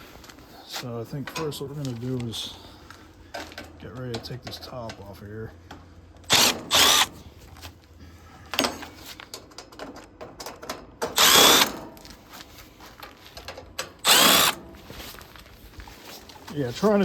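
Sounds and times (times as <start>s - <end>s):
small metal clicks and knocks: 3.3s - 5.9s, 8.5s - 12.2s, 12.9s - 14.1s
power drill whine: 6.3s - 7.2s, 11.1s - 11.8s, 14.0s - 14.6s.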